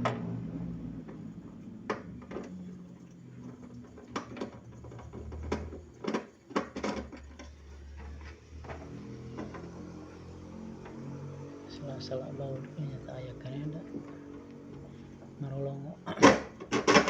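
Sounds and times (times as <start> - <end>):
low steady hum: 0.0 - 17.0
clicks and knocks of tools: 16.2 - 17.0.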